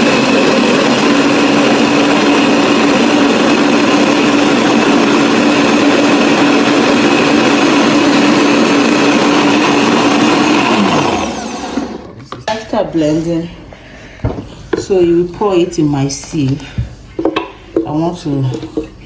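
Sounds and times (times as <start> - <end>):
blender motor whine: 0.0 - 12.1
liquid churning: 0.0 - 12.2.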